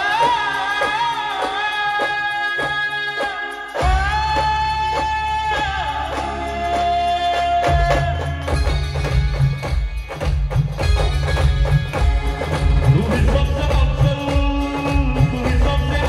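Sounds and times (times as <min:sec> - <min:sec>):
heavy drum beats: 0:00.0 - 0:16.0
steady percussion rhythm: 0:00.0 - 0:16.0
brass melody with slides: 0:10.8 - 0:16.0.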